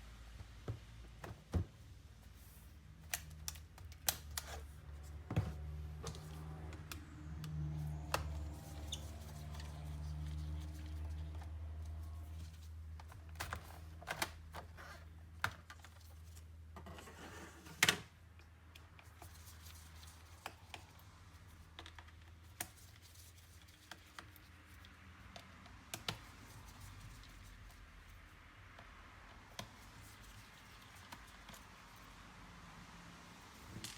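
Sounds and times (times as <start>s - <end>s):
laptop parts clicking and tapping: 3.0s - 4.7s, 5.3s - 8.9s, 20.3s - 23.0s, 23.6s - 26.6s.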